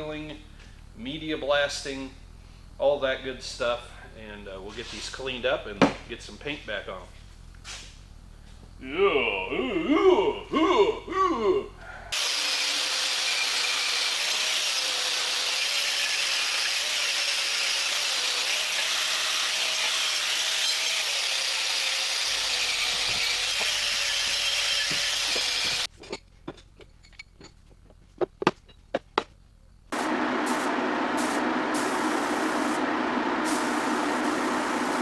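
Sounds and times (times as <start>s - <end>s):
power tool motor whine: 12.2s - 25.9s.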